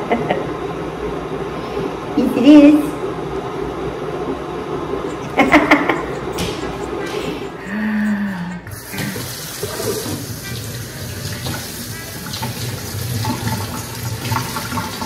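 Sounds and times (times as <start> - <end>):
tap water running into sink: 8.7 - 15.0.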